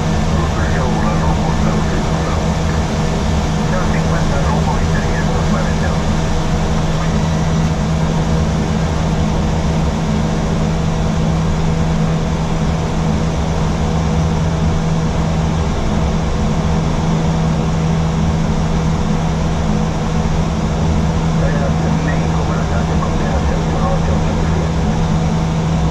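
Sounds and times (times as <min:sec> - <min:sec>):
rush of air in cockpit: 0:00.0 - 0:14.0
constant low hum: 0:00.0 - 0:25.9.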